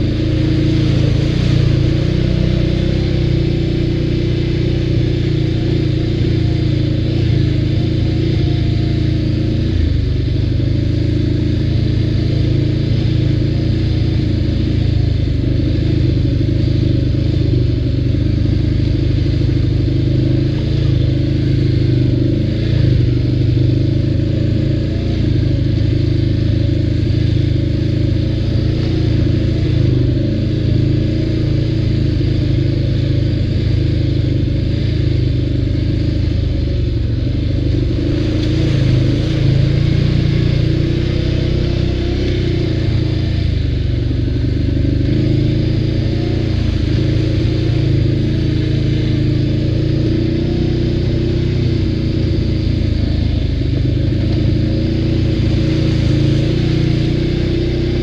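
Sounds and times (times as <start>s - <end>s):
atv engine running: 0.0s - 58.0s.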